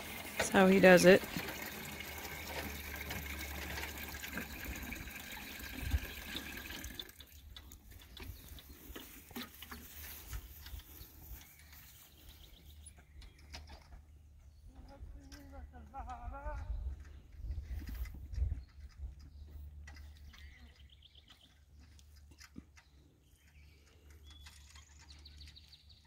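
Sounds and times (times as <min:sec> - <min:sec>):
water pouring onto soil: 0:00.0 - 0:07.4
faint clicks and rustles: 0:06.9 - 0:26.0.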